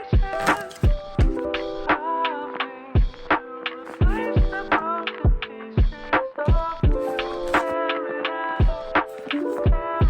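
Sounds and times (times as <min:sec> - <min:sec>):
kick drum thumps: 0:00.2 - 0:01.6, 0:04.0 - 0:04.7, 0:05.3 - 0:07.6, 0:08.6 - 0:09.0, 0:09.7 - 0:09.9.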